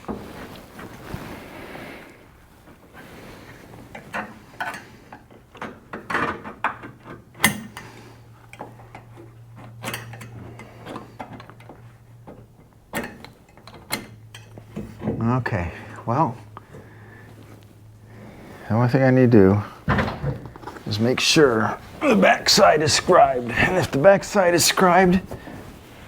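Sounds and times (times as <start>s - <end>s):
faint steady hum: 7.4s - 26.0s.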